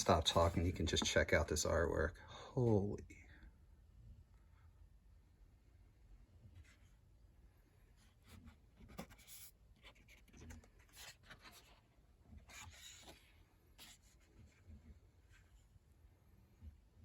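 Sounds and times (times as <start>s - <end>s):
paper pages rustling: 0.0s - 1.1s, 8.2s - 15.5s.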